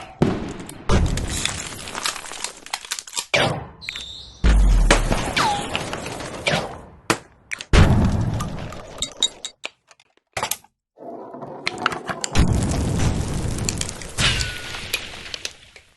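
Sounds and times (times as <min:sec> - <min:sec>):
heavy explosion impacts: 0:12.4 - 0:15.2.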